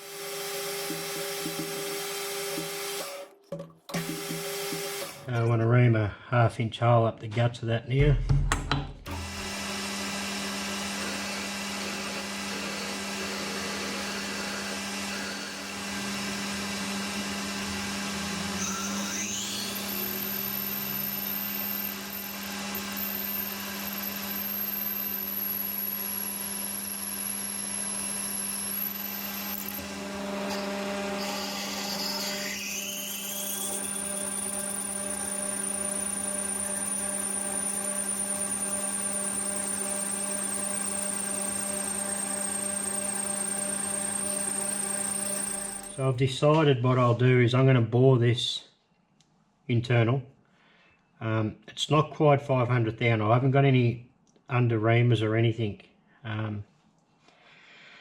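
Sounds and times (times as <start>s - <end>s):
metal lathe running: 0.0s - 3.3s, 3.9s - 5.3s, 9.1s - 46.0s.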